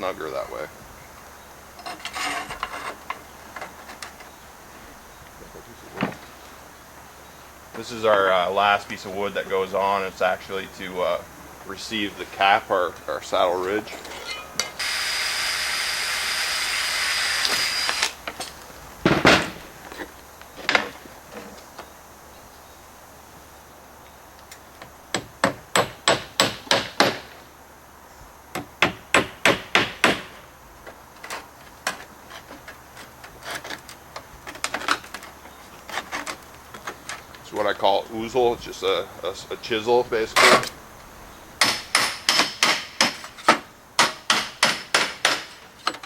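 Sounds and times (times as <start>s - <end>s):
steady noise: 0.0s - 21.3s
hammer nailing wood: 25.1s - 27.4s, 28.5s - 30.5s, 41.6s - 46.0s.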